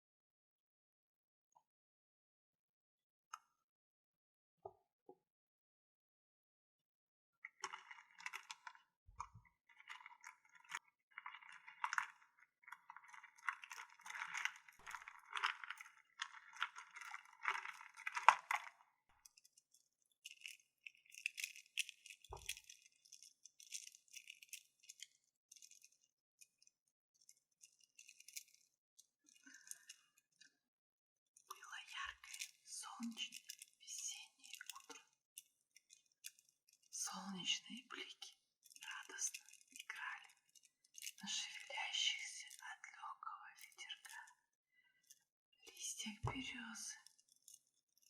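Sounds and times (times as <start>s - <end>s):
small crystals clinking and rattling: 7.5s - 8.8s, 9.4s - 30.6s, 31.3s - 42.9s, 43.6s - 48.0s.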